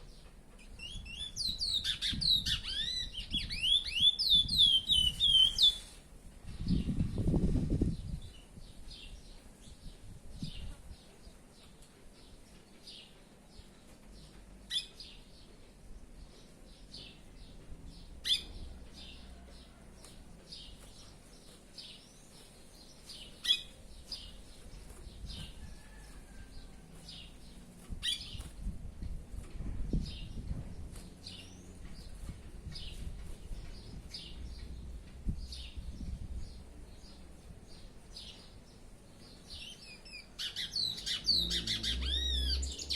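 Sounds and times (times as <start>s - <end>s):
finch singing whistled notes: 0.7s - 6.0s.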